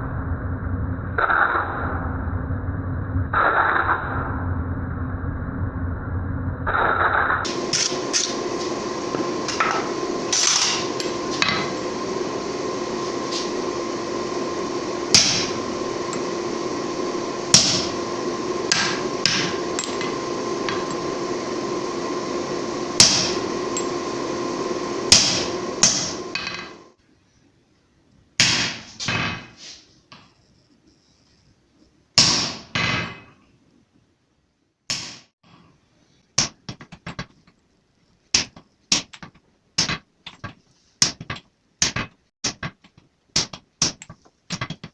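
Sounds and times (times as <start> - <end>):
steady two-tone hum: 7.5 - 28.8.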